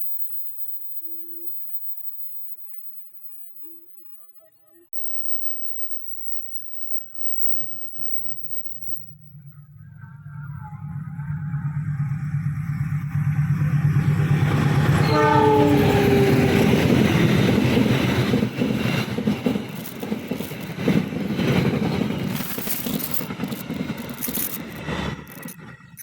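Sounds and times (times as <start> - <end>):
diesel train engine rumbling: 8.8 - 26.0
train horn: 10.1 - 17.5
wheels clacking over rail joints: 11.3 - 26.0.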